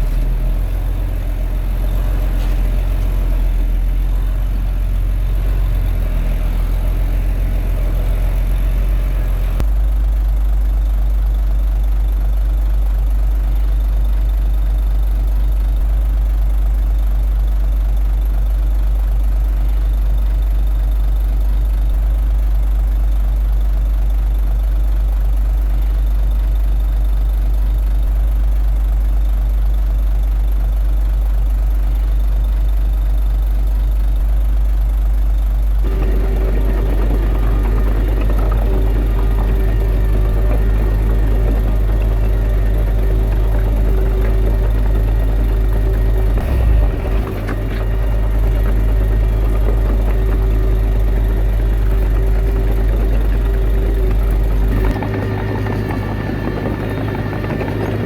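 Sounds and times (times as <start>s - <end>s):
bulldozer diesel engine: 0.0s - 58.0s.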